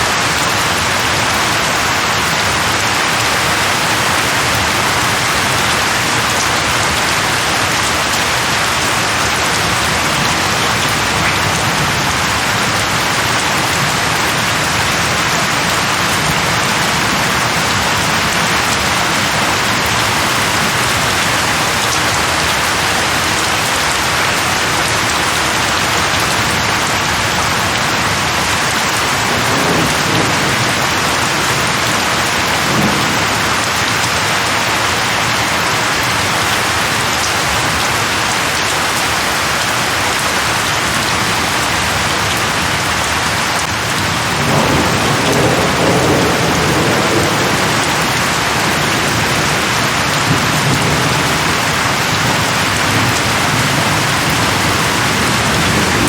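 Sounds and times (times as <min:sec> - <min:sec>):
heavy rain on leaves: 0:00.0 - 0:56.0
distant thunder rumbles: 0:44.2 - 0:56.0.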